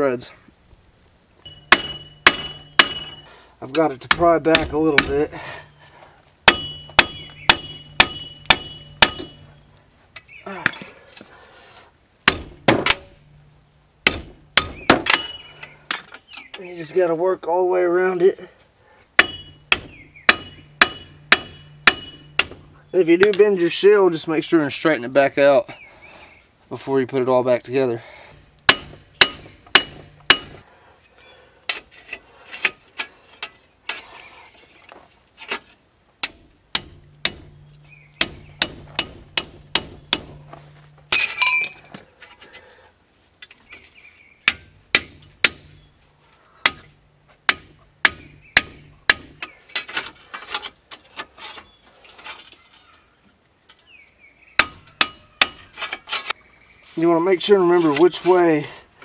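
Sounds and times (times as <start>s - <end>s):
hammer striking chisel on metal: 1.5s - 3.3s, 4.1s - 5.2s, 6.5s - 9.5s, 14.0s - 16.1s, 19.2s - 22.6s, 28.7s - 30.6s, 36.2s - 37.6s, 38.2s - 40.4s, 54.6s - 55.6s.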